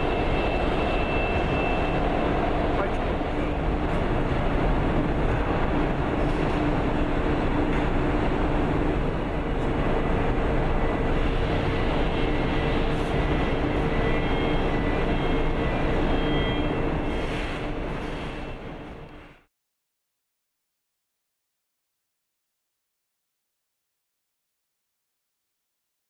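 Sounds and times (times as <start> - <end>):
industrial machinery humming: 0.0 - 17.3.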